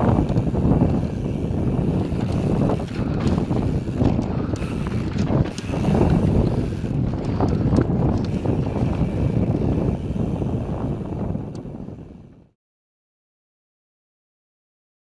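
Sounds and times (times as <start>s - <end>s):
tyres rumbling on dirt: 0.0s - 10.5s
bike rattling and knocking: 0.0s - 12.2s
wind buffeting microphone: 0.0s - 12.5s.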